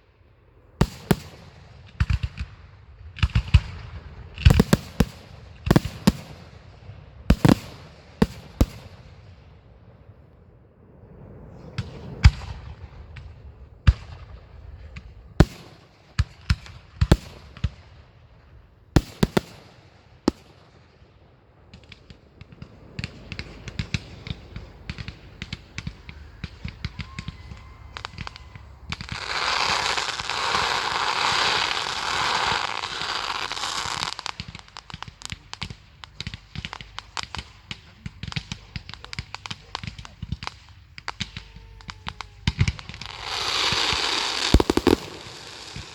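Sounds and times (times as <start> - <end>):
fireworks crackling: 0.0 - 10.2, 11.1 - 45.9
firework bangs: 0.8 - 10.2, 11.3 - 45.9
hissing crackle: 21.4 - 45.9.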